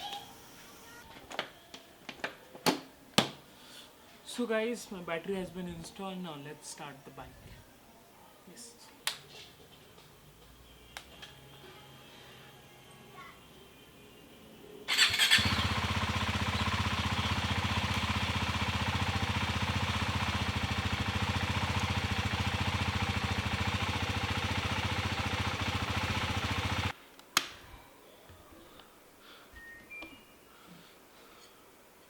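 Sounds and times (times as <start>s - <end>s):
engine electric starter cranking: 14.9s - 16.1s
motorcycle engine idling: 14.9s - 26.9s.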